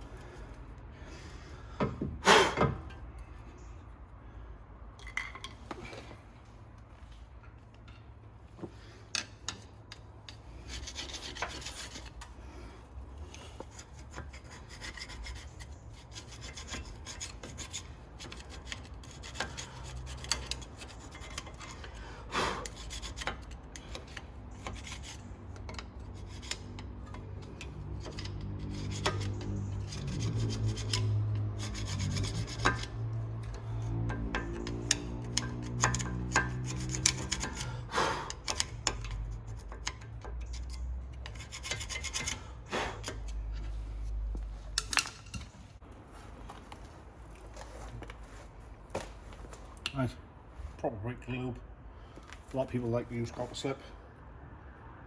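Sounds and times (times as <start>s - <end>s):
hand tool scraping metal: 9.1s - 12.4s, 13.3s - 43.8s.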